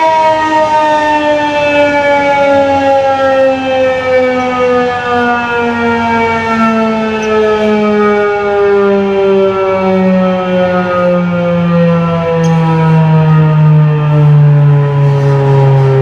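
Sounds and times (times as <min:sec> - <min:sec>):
warning siren winding down: 0:00.0 - 0:16.0.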